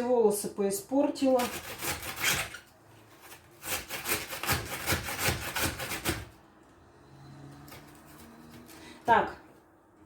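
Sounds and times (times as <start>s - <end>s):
cabbage rasping on metal grater: 1.2s - 2.6s, 3.2s - 6.3s.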